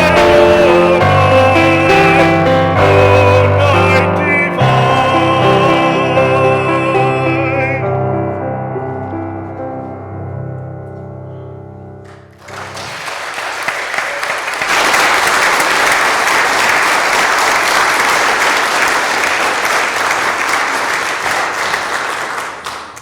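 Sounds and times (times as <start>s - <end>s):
congregation applauding: 12.1s - 23.0s.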